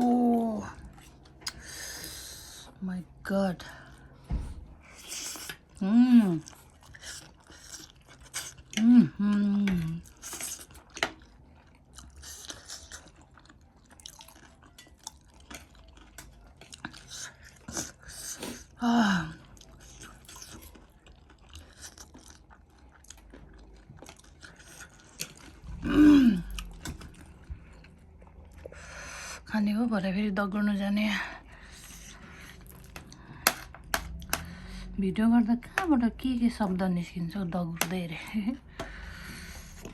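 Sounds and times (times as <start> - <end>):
person chewing crunchy food: 4.8 - 29.2, 31.5 - 34.7, 38.6 - 39.9.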